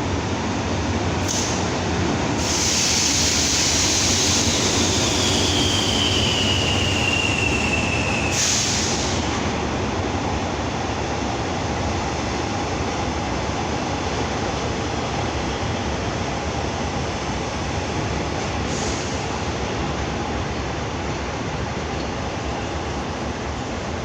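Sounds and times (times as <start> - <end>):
train rumbling on rails: 0.0 - 24.0.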